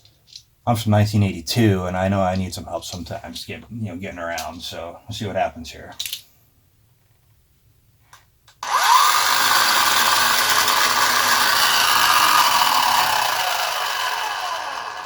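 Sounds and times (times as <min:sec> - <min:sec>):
toy car motor whirring: 0:08.6 - 0:15.0.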